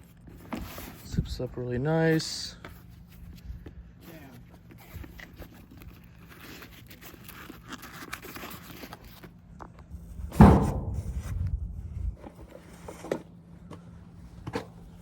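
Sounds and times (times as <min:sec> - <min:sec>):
low rumbling handling noise: 0:09.5 - 0:15.0
heavy thump: 0:10.3 - 0:11.5.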